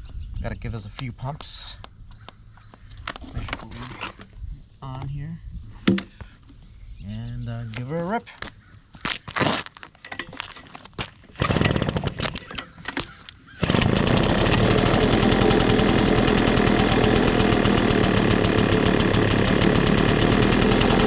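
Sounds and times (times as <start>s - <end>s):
leaf blower engine starting: 11.4s - 12.5s, 13.6s - 21.0s.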